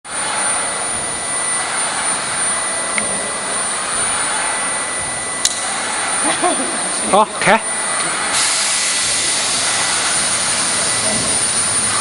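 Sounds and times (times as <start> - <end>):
high-pitched machinery whine: 0.1 - 12.0
loud rushing hiss: 7.6 - 12.0.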